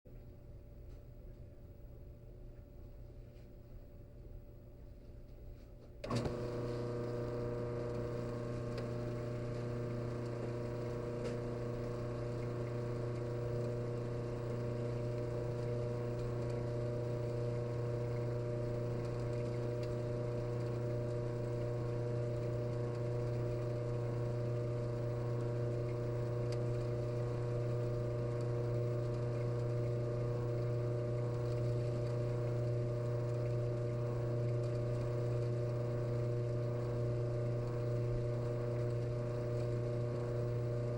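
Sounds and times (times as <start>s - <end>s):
water moving through pump: 5.9s - 40.9s
drain pump humming: 6.0s - 40.9s.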